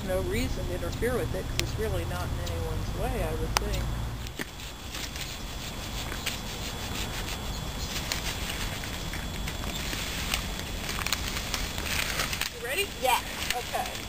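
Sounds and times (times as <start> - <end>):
brush rustling and crackling: 0.0 - 14.0
small twigs snapping: 7.0 - 12.7.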